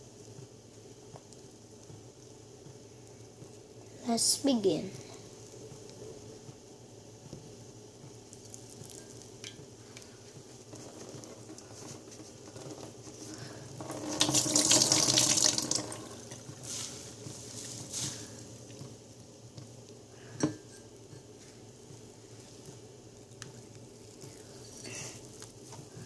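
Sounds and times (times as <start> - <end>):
faint handling noise: 8.3 - 13.8, 16.3 - 26.0
water running from a tap: 12.6 - 17.1.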